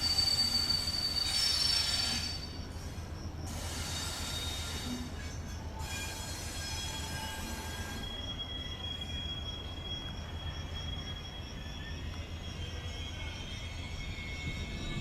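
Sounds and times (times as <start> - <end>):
pulsing high squeal: 0.0 - 2.9, 3.6 - 15.0
train low rumble: 0.0 - 15.0
train wheels squealing on rails: 0.0 - 15.0.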